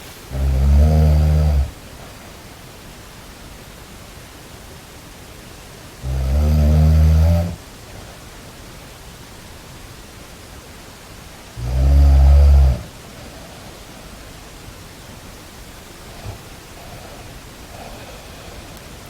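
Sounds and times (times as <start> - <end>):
faint hiss: 0.0 - 19.0
low snores: 0.3 - 1.8, 6.0 - 7.6, 11.6 - 13.0, 16.0 - 19.0.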